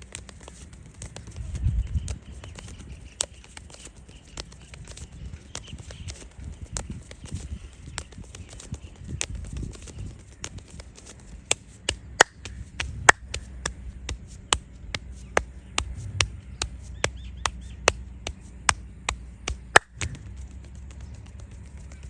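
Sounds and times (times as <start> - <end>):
hands slapping head: 10.4 - 20.4.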